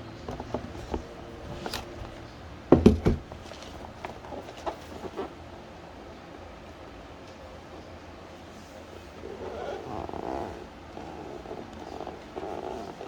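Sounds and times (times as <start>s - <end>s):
sharp knocks on cardboard box: 0.5s - 3.8s.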